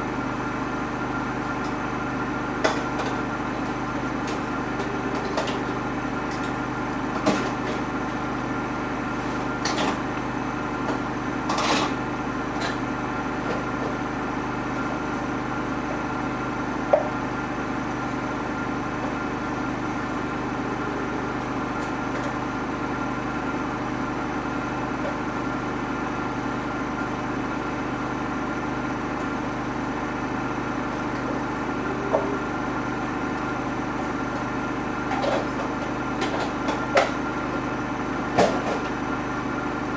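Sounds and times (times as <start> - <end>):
washing machine motor hum: 0.0 - 39.9.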